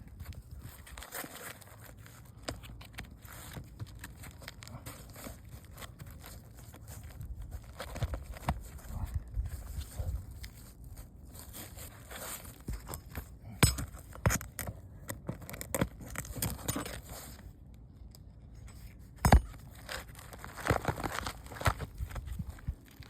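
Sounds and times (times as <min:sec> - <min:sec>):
scrapes and knocks on shingles: 0:19.2 - 0:23.0.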